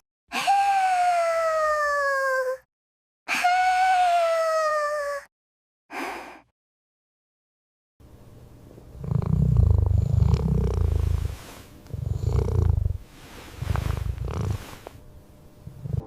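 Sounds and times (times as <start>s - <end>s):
cat purring: 8.7s - 16.0s.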